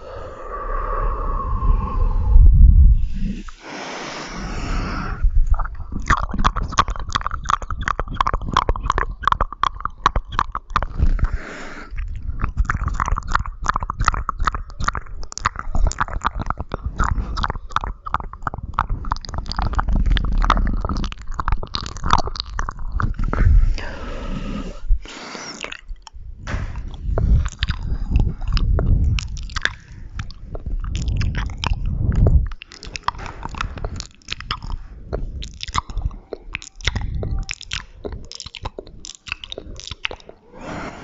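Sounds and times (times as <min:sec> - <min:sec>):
breathy hiss: 0:03.0 - 0:05.2, 0:11.2 - 0:12.0, 0:23.5 - 0:25.7
wet mouth clicks and smacks: 0:05.2 - 0:24.2, 0:24.9 - 0:40.5.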